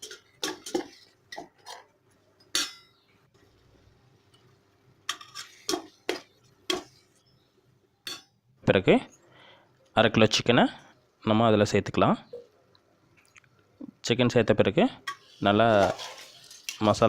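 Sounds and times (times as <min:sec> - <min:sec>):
spoon scraping in cooking pot: 0:05.1 - 0:07.4, 0:15.0 - 0:16.9.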